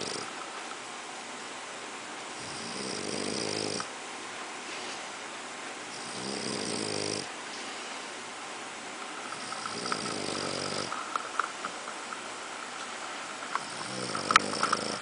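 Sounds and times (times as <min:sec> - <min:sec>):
buzzing snores: 0:00.0 - 0:00.4, 0:02.4 - 0:03.9, 0:05.9 - 0:07.3, 0:09.3 - 0:11.0, 0:13.6 - 0:15.0
small clicks: 0:09.1 - 0:15.0.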